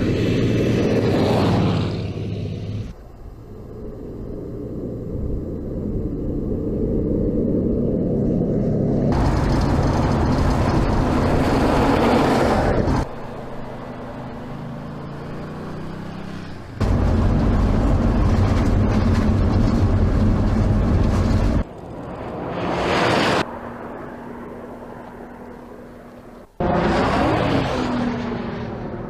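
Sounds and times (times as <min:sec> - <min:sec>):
sports car engine running: 0:09.2 - 0:11.8.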